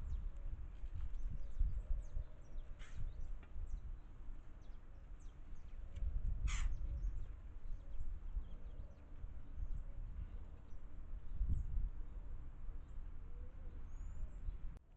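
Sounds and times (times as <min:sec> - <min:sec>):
small birds chirping: 0:00.0 - 0:14.8
low wind rumble: 0:00.0 - 0:14.9
harsh bird calls: 0:06.4 - 0:09.1.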